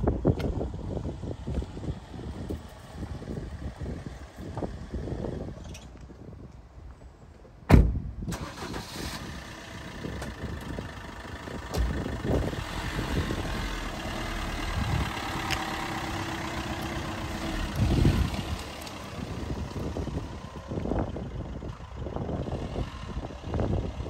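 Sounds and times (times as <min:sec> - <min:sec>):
diesel engine starting and idling: 0:08.2 - 0:24.0.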